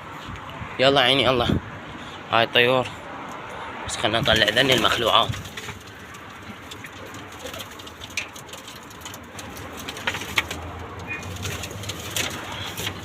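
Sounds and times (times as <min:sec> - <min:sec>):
pigeons cooing: 0:04.4 - 0:13.0.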